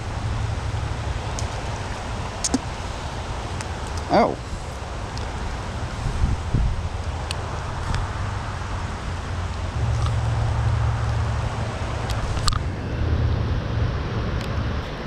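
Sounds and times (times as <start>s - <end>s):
steady rain: 0.0s - 15.0s
wind rumbling on microphone: 0.0s - 15.0s
sharp ticks: 9.5s - 11.3s.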